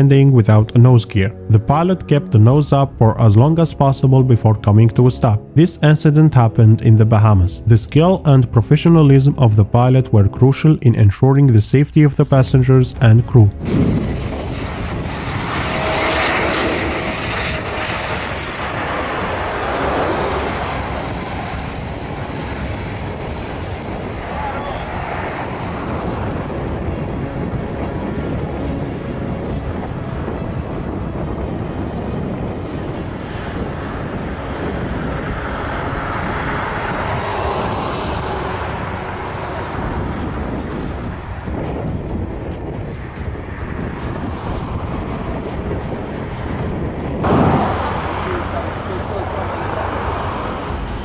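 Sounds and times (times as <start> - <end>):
jet airliner rushing noise: 11.5 - 51.0
wind rumble on microphone: 11.5 - 51.0.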